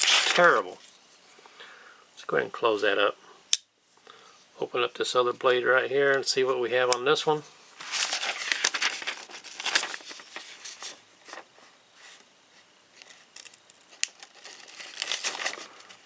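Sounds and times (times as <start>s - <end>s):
paper rustling and crinkling: 0.0s - 1.0s, 7.4s - 16.0s.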